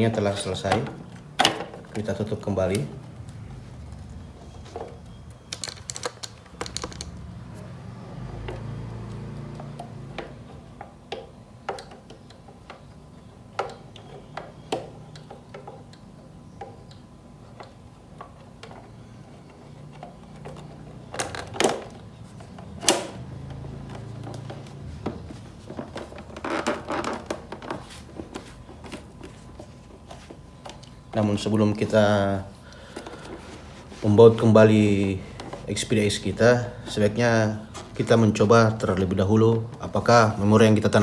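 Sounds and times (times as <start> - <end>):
hands handling plastic casing: 0.0 - 7.6, 32.6 - 38.2.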